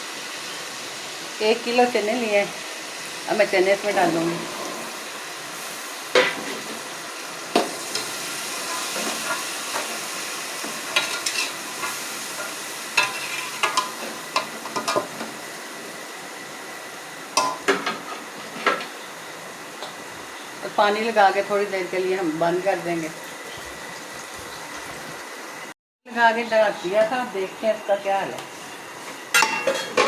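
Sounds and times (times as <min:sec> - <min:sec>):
frying hiss: 0:00.0 - 0:30.0
spoon clinking and scraping pot: 0:10.9 - 0:15.1, 0:29.3 - 0:30.0.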